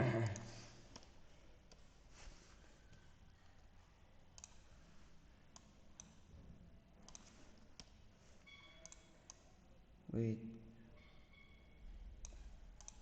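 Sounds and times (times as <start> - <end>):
mouse and keyboard clicks: 4.3 - 4.7, 7.0 - 9.5, 12.2 - 13.0.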